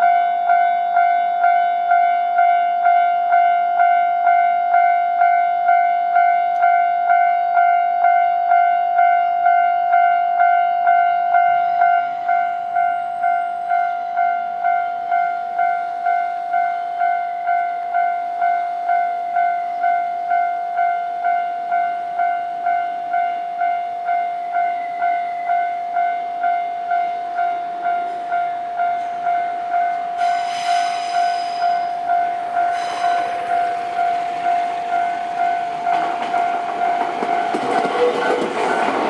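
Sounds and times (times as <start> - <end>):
level-crossing alarm dinging: 0.1 - 39.0
train passing: 24.0 - 39.0.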